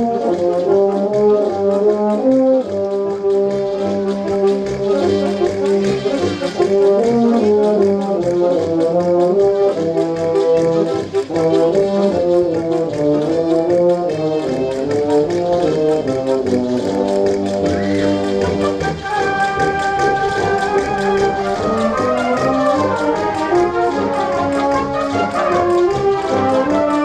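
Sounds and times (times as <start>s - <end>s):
brass band playing: 0.0s - 27.0s.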